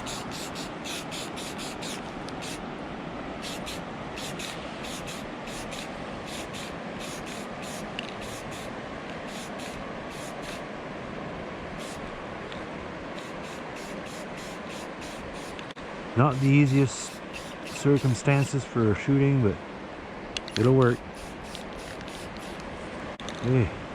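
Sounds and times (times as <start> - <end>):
spray paint can hissing: 0.0 - 2.6, 3.4 - 8.7, 9.3 - 10.6, 11.8 - 12.0, 13.2 - 15.6, 17.1 - 18.2, 21.1 - 22.6.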